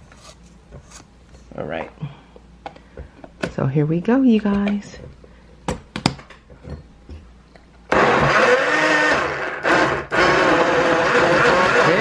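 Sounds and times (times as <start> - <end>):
blender motor running: 7.9 - 12.0.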